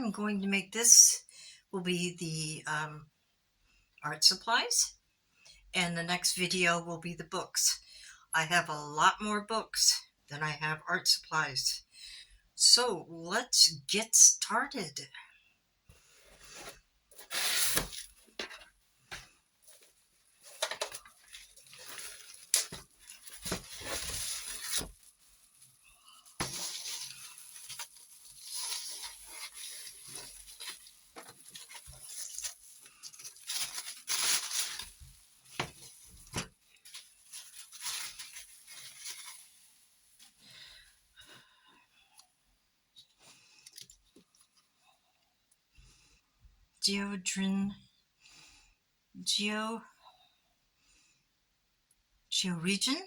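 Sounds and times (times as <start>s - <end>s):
packaging rustling and tearing: 16.4s - 40.4s.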